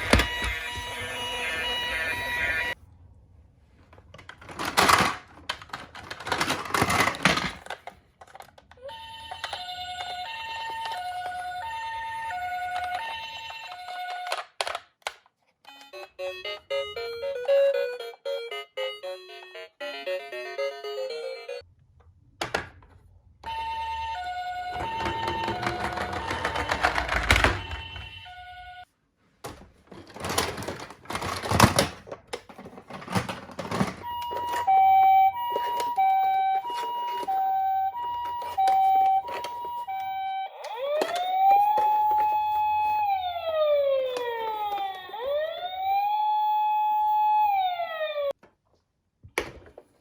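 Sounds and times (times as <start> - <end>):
electronic two-tone siren: 0.0 - 2.8, 34.0 - 48.4
wailing police-style siren: 0.0 - 2.8, 8.9 - 14.4, 23.4 - 28.8, 34.0 - 48.4
toy cars rattling down a slope: 4.3 - 11.6, 24.2 - 27.8.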